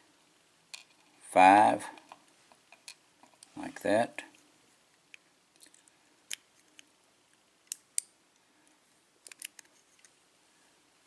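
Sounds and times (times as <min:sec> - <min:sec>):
small metal clicks and taps: 0:09.2 - 0:09.7.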